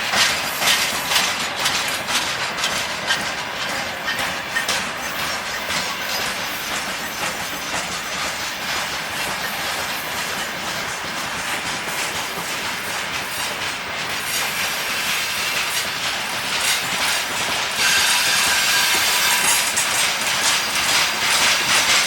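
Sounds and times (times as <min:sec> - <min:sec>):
train wheels clacking over rail joints: 0:00.0 - 0:22.0.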